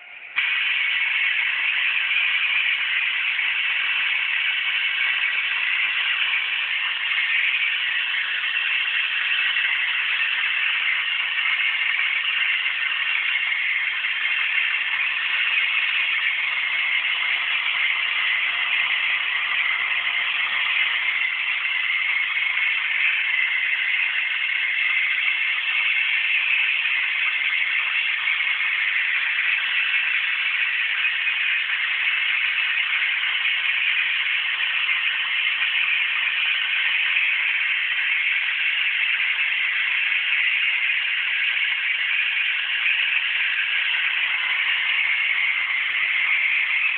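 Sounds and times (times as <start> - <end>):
vacuum cleaner running: 0.0 - 2.1, 13.5 - 25.2, 43.4 - 46.9.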